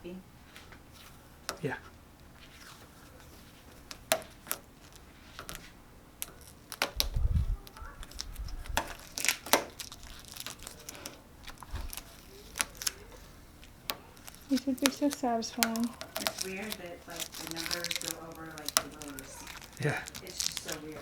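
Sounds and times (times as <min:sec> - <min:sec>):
paper and tape crinkling and tearing: 0:02.3 - 0:21.0
low thumps: 0:07.0 - 0:09.0.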